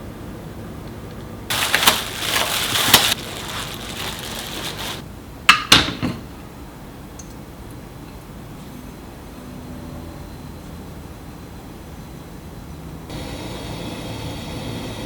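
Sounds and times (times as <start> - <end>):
crunching scraping noise: 1.5 - 5.0.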